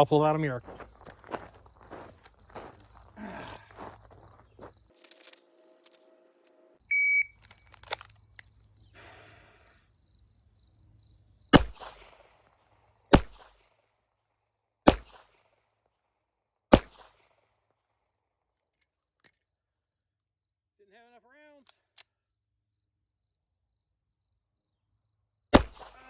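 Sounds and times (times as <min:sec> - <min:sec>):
short high electronic beep: 0:06.9 - 0:07.4
pistol shots: 0:11.5 - 0:12.4, 0:13.1 - 0:13.7, 0:14.8 - 0:15.4, 0:16.7 - 0:17.2, 0:25.5 - 0:26.0.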